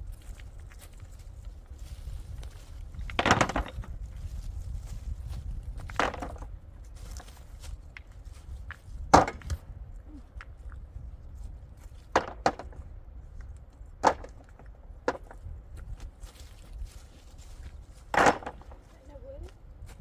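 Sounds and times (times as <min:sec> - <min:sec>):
knocks on wood: 0:12.1 - 0:12.8.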